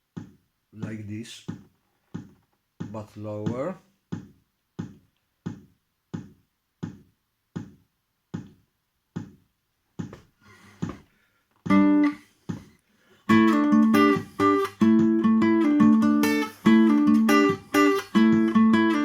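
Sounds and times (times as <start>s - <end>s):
guitar playing picked riff: 11.7s - 12.2s, 13.3s - 19.0s
metronome ticking: 13.3s - 19.0s.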